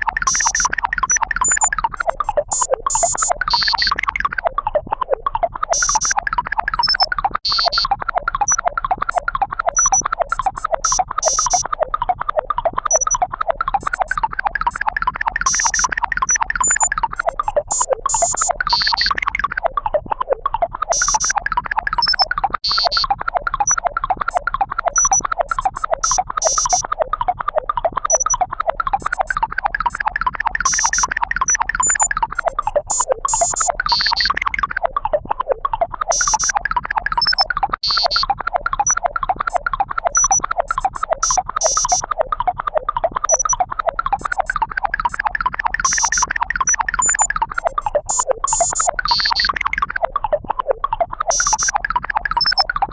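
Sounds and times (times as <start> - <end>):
rapid electronic bleeps: 0.0 - 52.9.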